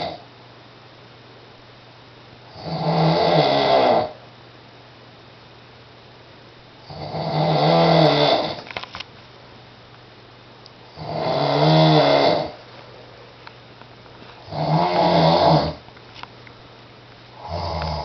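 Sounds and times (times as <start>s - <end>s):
man snoring: 0.0s - 0.2s, 2.5s - 4.2s, 6.9s - 8.6s, 10.9s - 12.6s, 14.4s - 15.8s, 17.4s - 18.0s.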